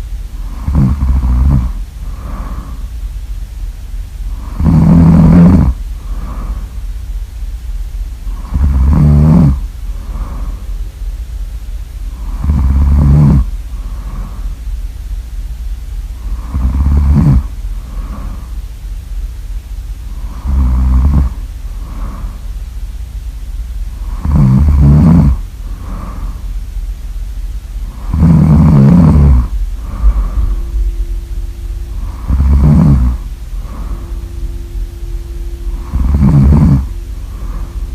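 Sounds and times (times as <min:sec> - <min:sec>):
loud snoring: 0:00.0 - 0:02.9, 0:04.3 - 0:06.7, 0:08.3 - 0:10.6, 0:12.1 - 0:14.6, 0:16.2 - 0:18.6, 0:20.1 - 0:22.5, 0:24.0 - 0:26.4, 0:27.8 - 0:31.0, 0:31.7 - 0:34.5, 0:35.6 - 0:37.9
steady low hum: 0:00.0 - 0:37.9.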